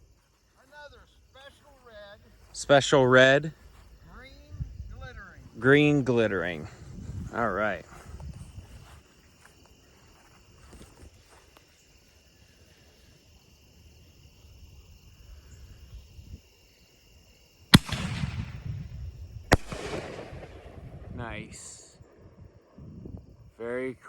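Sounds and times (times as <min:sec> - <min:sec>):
insects trilling: 0:00.0 - 0:24.0
firework bangs with echo: 0:17.8 - 0:21.7.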